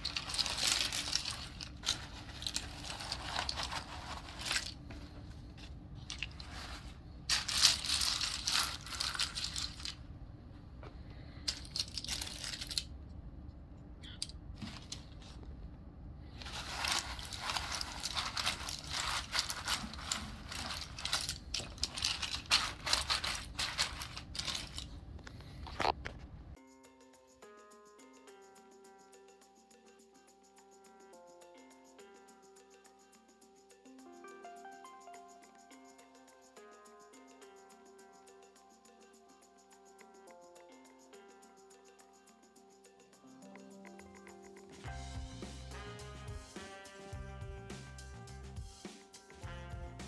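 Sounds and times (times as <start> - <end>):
scratchy rubbing: 0.0 - 5.0, 6.1 - 10.0, 16.4 - 25.0.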